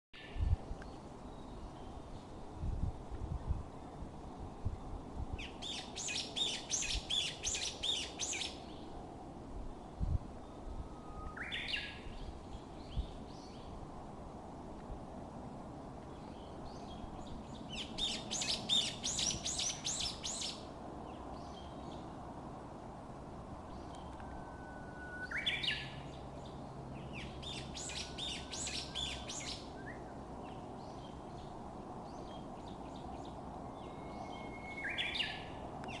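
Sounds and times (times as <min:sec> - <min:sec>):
faint outdoor hiss: 0:00.2 - 0:36.0
rapid high twittering birdsong: 0:03.8 - 0:09.0, 0:10.4 - 0:13.8, 0:16.1 - 0:22.2, 0:23.7 - 0:36.0
bird whistled song: 0:05.4 - 0:08.6, 0:10.4 - 0:13.6, 0:16.7 - 0:20.6, 0:23.8 - 0:26.1, 0:27.1 - 0:30.1, 0:33.7 - 0:36.0.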